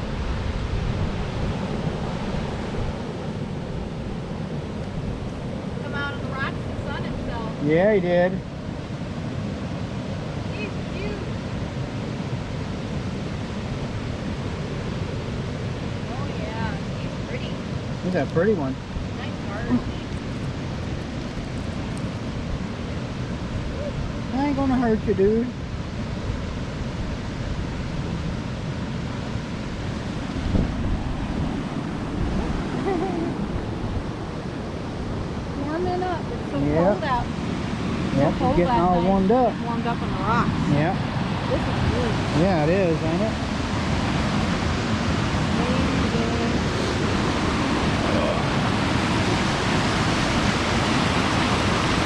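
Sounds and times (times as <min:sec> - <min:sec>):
wind rumbling on microphone: 0:00.0 - 0:52.0
waterfall rushing: 0:29.5 - 0:52.0.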